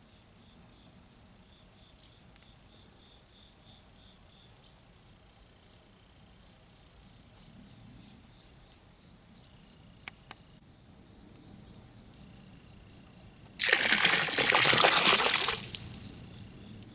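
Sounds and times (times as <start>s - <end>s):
faint insect chirping: 0.0s - 13.6s, 15.2s - 16.9s
water pouring: 13.6s - 16.4s.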